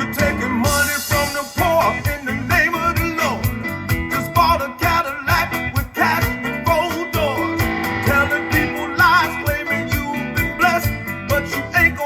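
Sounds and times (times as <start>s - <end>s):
bass: 0.0s - 12.0s
electric guitar bent notes: 7.2s - 11.6s
steady drum beat: 7.4s - 9.8s.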